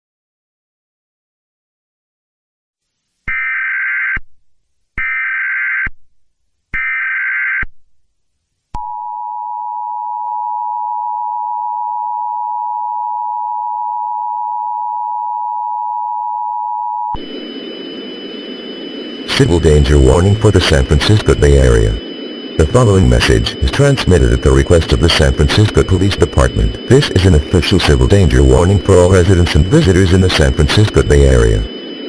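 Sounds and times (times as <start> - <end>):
digital data tone bursts: 17.2 - 32.0
two-tone attention signal: 18.5 - 32.0.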